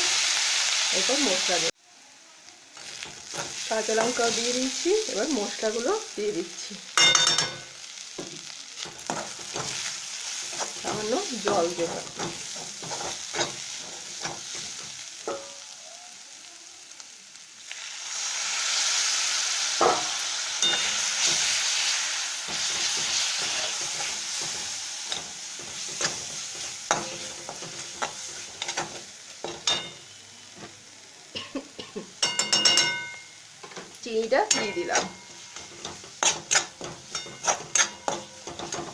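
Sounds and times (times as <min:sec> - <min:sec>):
loud sizzle: 0:00.0 - 0:38.9
spices frying in oil: 0:00.0 - 0:38.9
spatula scraping pan: 0:08.2 - 0:15.5, 0:19.8 - 0:30.0, 0:33.6 - 0:38.9
ringing metal clinks: 0:32.2 - 0:33.4.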